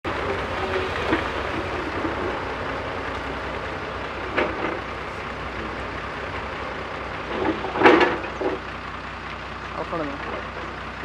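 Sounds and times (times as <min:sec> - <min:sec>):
backhoe diesel engine running: 0:00.0 - 0:11.0.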